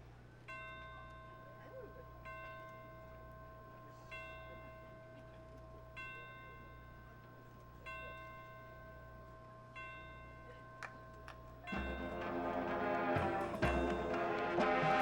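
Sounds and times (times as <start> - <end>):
soft bell-like chime: 0.4 - 14.6
marching band music: 11.7 - 15.0.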